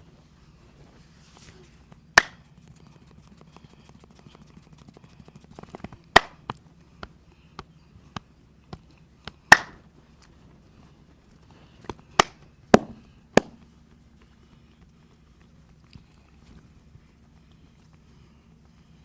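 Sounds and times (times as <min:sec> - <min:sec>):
faint low hum: 0:00.0 - 0:19.0
hands striking during massage: 0:02.2 - 0:02.5, 0:06.2 - 0:06.6, 0:09.5 - 0:09.8, 0:12.2 - 0:13.6
light hand taps: 0:11.8 - 0:13.7.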